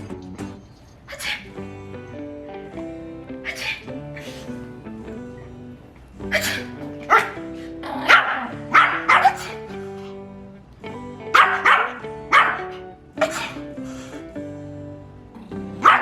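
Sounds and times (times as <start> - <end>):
background music: 0.0 - 16.0
small dog yapping: 1.1 - 1.5, 6.3 - 9.8, 11.4 - 13.6, 15.8 - 16.0.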